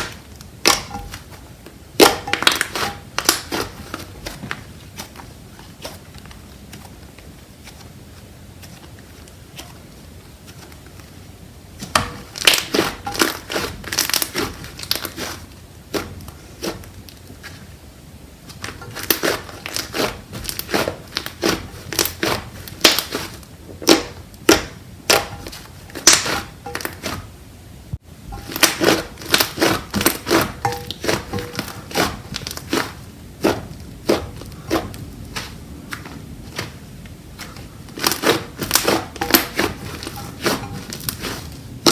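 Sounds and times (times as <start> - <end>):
slime squished with crackling pops: 18.5 - 27.2.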